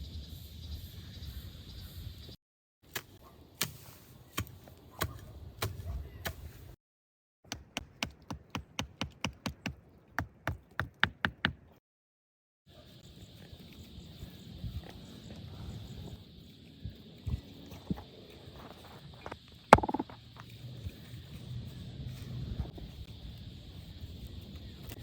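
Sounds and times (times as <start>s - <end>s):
tool knocking on wood: 19.8s - 20.2s.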